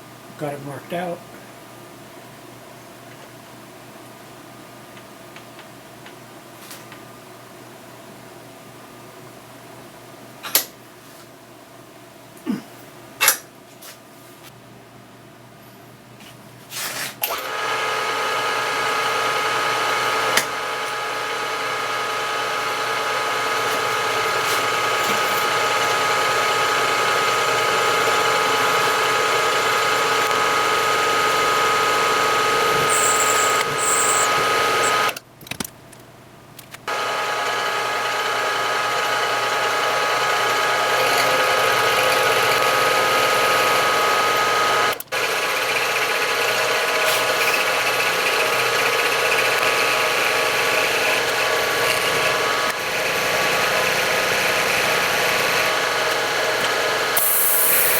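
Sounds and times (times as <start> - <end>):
electric motor whining: 17.5 - 35.2, 46.5 - 57.9.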